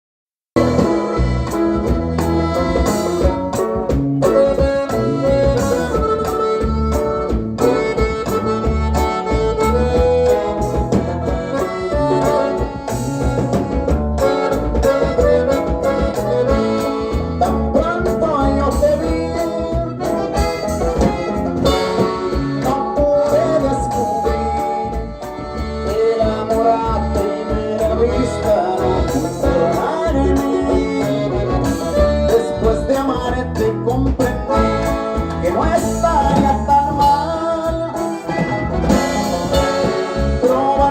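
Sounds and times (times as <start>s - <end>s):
live band playing latin dance music: 0.6s - 40.9s.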